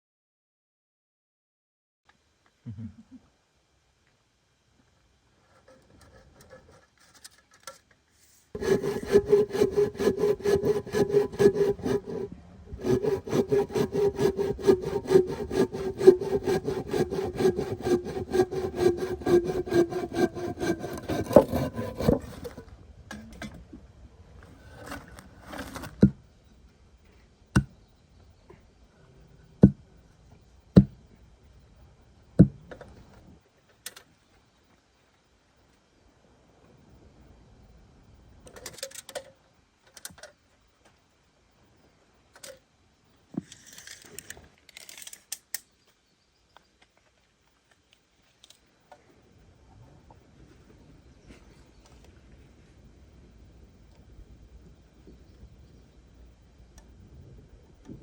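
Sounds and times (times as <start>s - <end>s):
hand saw cutting wood: 8.6s - 22.7s, 24.6s - 26.0s.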